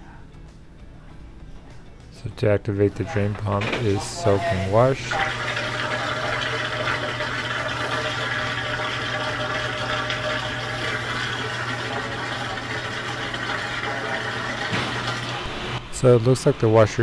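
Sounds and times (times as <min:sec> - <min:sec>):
drain pump motor hum: 0:02.8 - 0:17.0
water being pumped out: 0:03.4 - 0:15.8.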